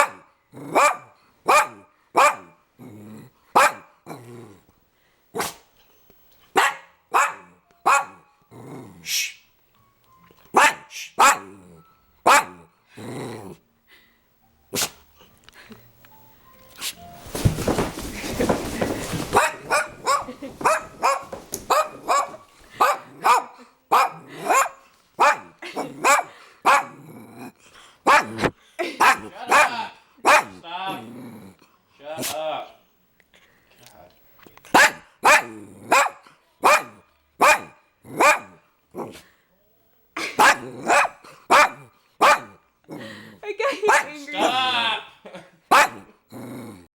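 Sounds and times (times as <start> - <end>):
dog barking: 0.0 - 2.6, 3.6 - 3.9, 6.5 - 8.2, 10.5 - 11.5, 12.2 - 12.7, 19.3 - 27.0, 28.1 - 28.4, 29.0 - 30.6, 34.7 - 38.6, 40.4 - 42.6, 43.9 - 44.6, 45.7 - 46.1
dog growling low: 2.8 - 3.4, 4.1 - 4.7, 8.5 - 9.1, 12.9 - 13.6, 26.9 - 27.6, 30.9 - 31.7, 46.2 - 46.9.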